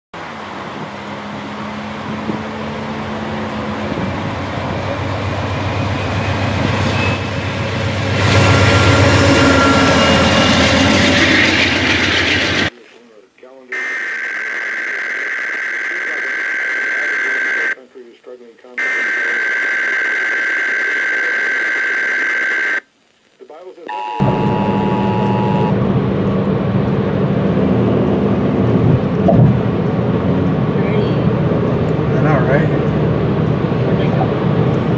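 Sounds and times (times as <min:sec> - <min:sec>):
train rumbling past: 0:00.3 - 0:12.7
two-tone alert tone: 0:23.9 - 0:25.9.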